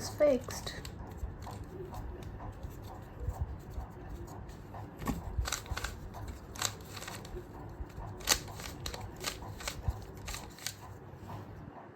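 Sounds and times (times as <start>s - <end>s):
puzzle cube plastic clicks: 5.0s - 10.8s.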